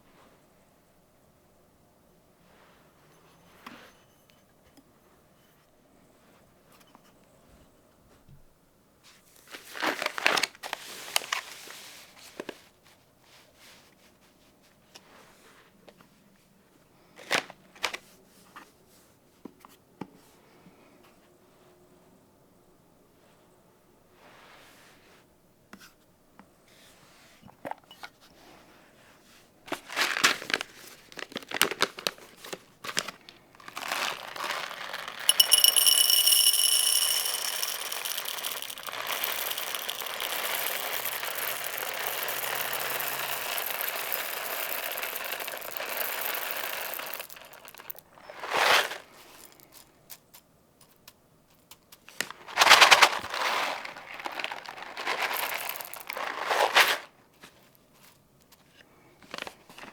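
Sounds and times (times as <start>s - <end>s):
packaging crinkling and clicking: 29.9s - 35.4s
packaging rustling: 29.9s - 35.5s, 52.4s - 57.1s
packaging rasping: 33.6s - 48.0s, 52.6s - 56.6s.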